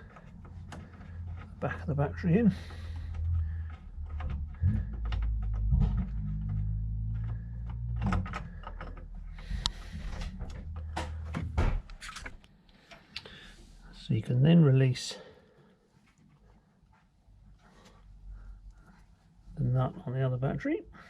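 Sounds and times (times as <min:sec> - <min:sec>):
clicks knocks and scrapes: 0:00.0 - 0:12.4
low rumble: 0:01.2 - 0:11.7.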